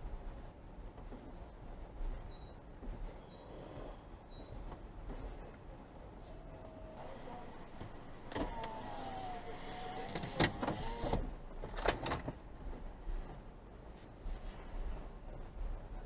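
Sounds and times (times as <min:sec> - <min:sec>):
power window motor whining: 0:07.0 - 0:12.1
window motor clicks: 0:07.0 - 0:12.4.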